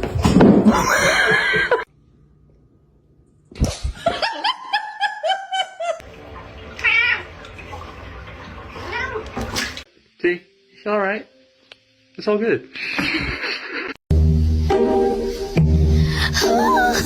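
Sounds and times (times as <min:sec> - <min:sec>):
cat meowing: 0:06.8 - 0:07.3.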